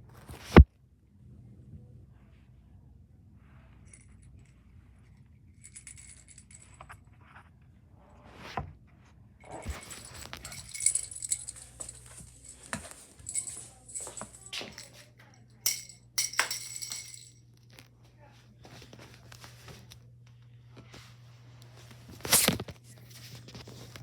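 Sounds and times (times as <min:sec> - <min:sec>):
small metal pieces jingling: 0:09.5 - 0:15.1, 0:15.7 - 0:17.4.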